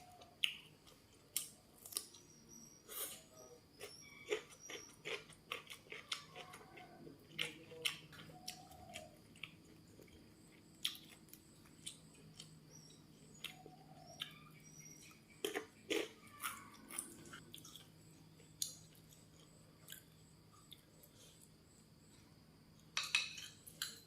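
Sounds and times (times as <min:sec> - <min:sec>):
person chewing crunchy food: 0:02.9 - 0:14.4, 0:15.0 - 0:21.6.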